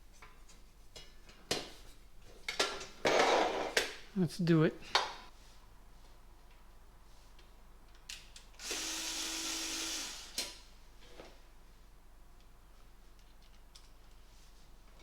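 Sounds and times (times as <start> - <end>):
power drill driving screw: 8.6 - 10.5.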